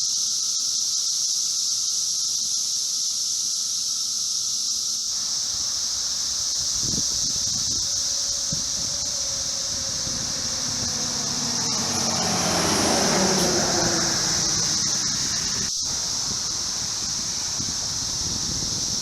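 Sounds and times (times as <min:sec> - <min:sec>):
cicadas droning: 0:00.0 - 0:19.0
vehicle passing: 0:05.2 - 0:18.2.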